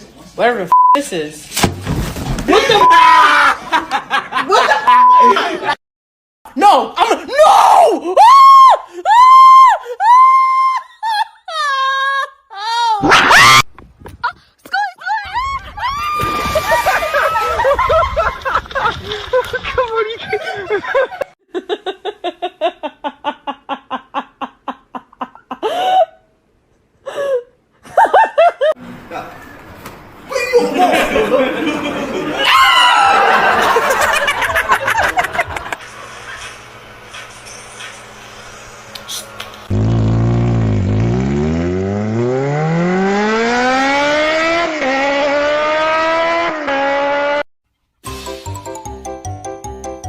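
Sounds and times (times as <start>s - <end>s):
person laughing: 2.5s - 5.8s, 10.0s - 12.7s, 30.3s - 32.4s, 33.4s - 35.8s
car engine accelerating: 38.6s - 47.4s.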